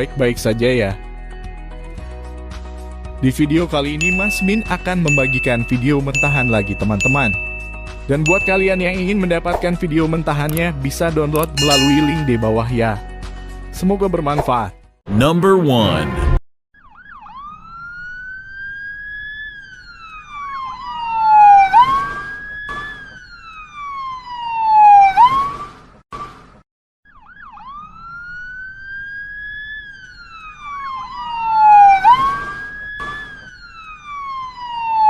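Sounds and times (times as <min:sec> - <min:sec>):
ambulance siren wailing: 0:11.5 - 0:12.8, 0:16.8 - 0:25.6, 0:27.1 - 0:35.0.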